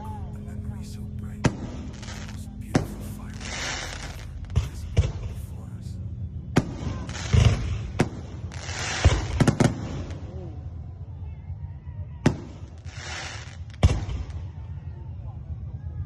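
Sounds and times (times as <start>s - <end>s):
fireworks bangs: 1.4s - 5.8s, 6.6s - 10.3s, 12.2s - 14.7s
fireworks crackling hiss: 1.8s - 5.3s, 8.5s - 10.1s, 12.8s - 14.0s.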